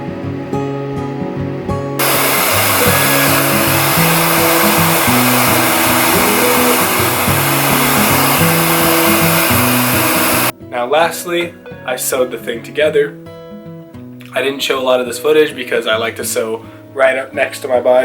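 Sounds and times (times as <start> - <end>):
background music: 0.0 - 18.0
heat gun blowing: 2.0 - 10.5.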